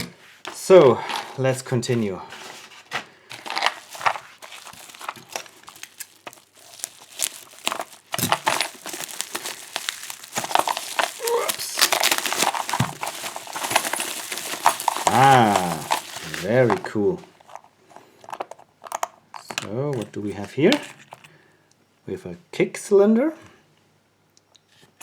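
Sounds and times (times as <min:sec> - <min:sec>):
packaging crinkling: 0:02.4 - 0:19.1.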